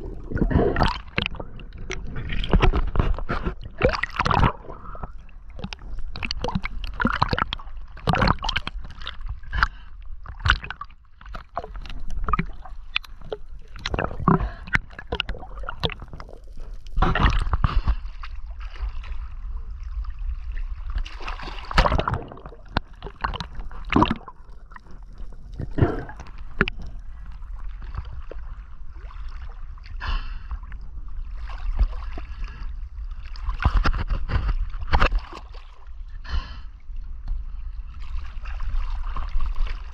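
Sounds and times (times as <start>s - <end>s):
water sloshing and gurgling: 0.0s - 39.9s.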